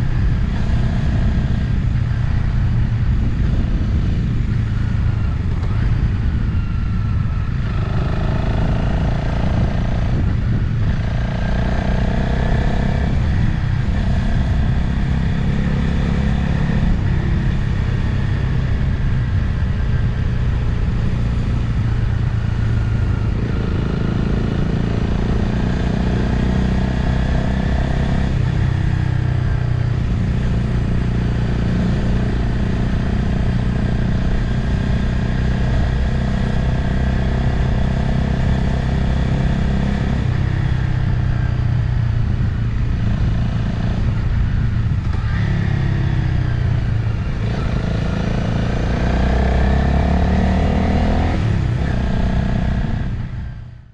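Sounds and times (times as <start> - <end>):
motorcycle engine running: 0.0 - 53.9
wind noise: 0.0 - 53.9.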